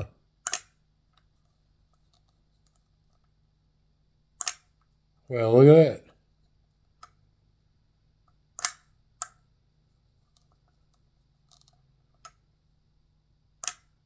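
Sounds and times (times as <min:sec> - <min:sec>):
action figure mechanism clicking: 0:00.4 - 0:00.8, 0:04.4 - 0:04.7, 0:08.6 - 0:09.4, 0:13.6 - 0:13.9.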